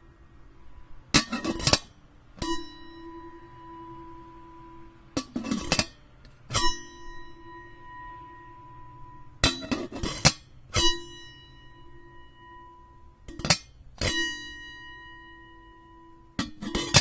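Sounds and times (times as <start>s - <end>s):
metal kettle lid rattling: 1.2s - 1.9s, 5.2s - 5.9s, 9.4s - 10.4s, 16.4s - 17.0s
metal clanging and ringing: 1.2s - 3.8s, 5.2s - 17.0s.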